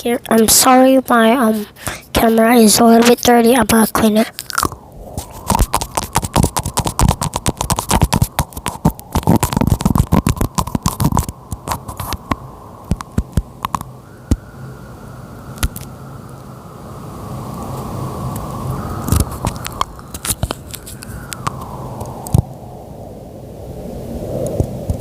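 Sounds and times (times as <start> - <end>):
faint steady hiss: 0.0 - 25.0
rubbing and scraping on microphone: 0.3 - 13.9, 19.1 - 21.6, 24.5 - 25.0
scattered clicks: 4.4 - 14.4.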